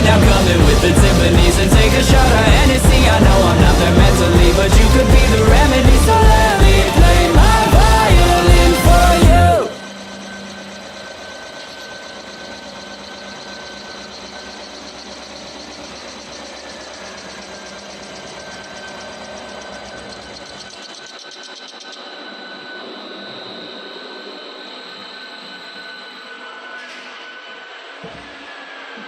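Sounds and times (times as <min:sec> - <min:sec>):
fast even ticking: 0:00.0 - 0:09.6
low rumble: 0:00.0 - 0:09.6
metal spinning machine whirring: 0:00.0 - 0:29.0.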